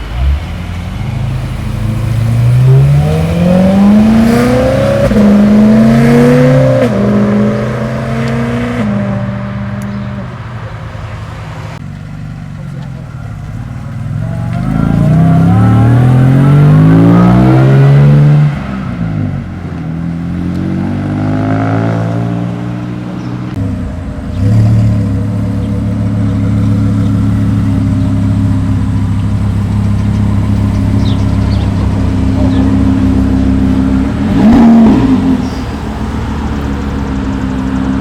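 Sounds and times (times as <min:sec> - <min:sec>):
car engines revving: 0:00.0 - 0:38.0
steady engine note: 0:13.4 - 0:17.9.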